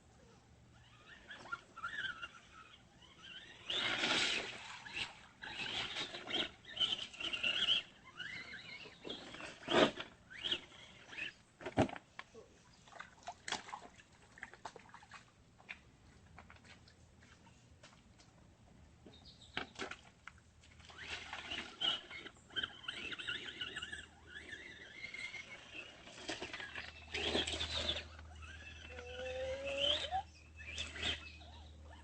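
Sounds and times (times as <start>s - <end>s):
small electric motor whining: 0.2s - 11.4s, 20.9s - 32.0s.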